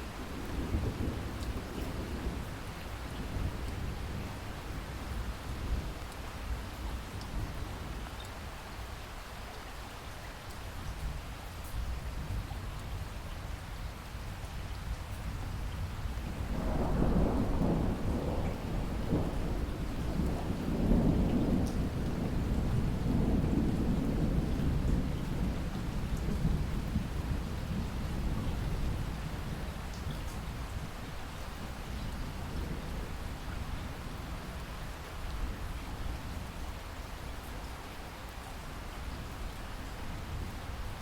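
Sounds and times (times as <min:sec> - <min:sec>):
rain falling: 0:00.0 - 0:41.0
thunder rumbling: 0:16.3 - 0:29.7.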